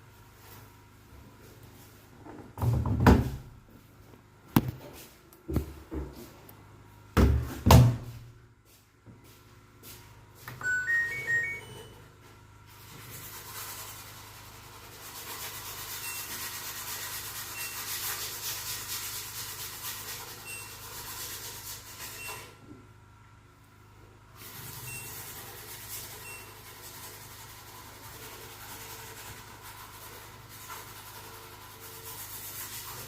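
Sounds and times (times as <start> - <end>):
washing machine heavy thumps: 2.6 - 3.5, 7.2 - 8.2
control panel beeps: 10.6 - 12.0
washing machine rushing hiss: 13.0 - 22.5.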